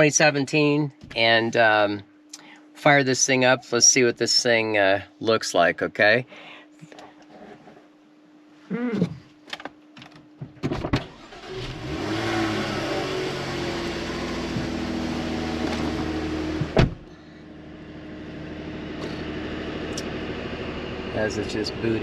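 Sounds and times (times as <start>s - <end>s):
engine starter clicks: 11.0s - 11.8s
car engine revving then idling: 11.1s - 16.8s, 17.6s - 22.0s
engine clunk: 14.3s - 17.1s.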